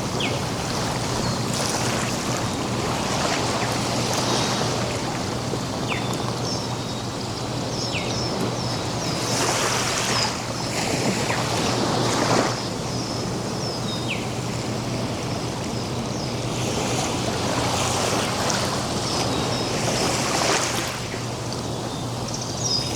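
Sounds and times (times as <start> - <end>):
birds chirping: 0.1 - 2.0, 3.2 - 11.8, 12.6 - 14.4, 19.0 - 22.9
ocean surf breaking: 16.5 - 21.4.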